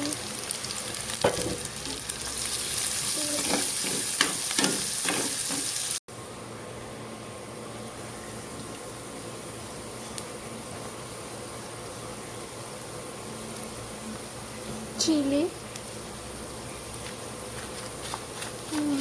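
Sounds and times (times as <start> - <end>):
food sizzling in hot oil: 0.0 - 6.1, 7.2 - 19.0
spatula scraping and knocking pan: 3.3 - 5.9.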